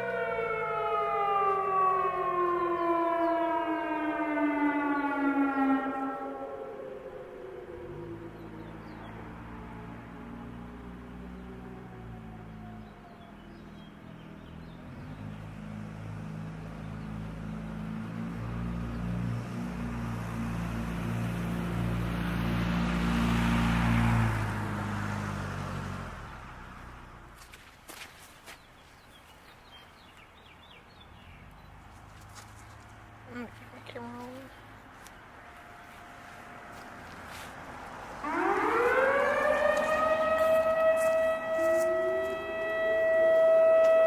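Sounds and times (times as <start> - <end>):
fainter second siren tone: 0.0 - 13.5, 35.4 - 44.0
outdoor warning siren wailing: 0.0 - 27.2, 34.8 - 44.0
vehicle engine passing: 0.0 - 27.5, 30.6 - 44.0.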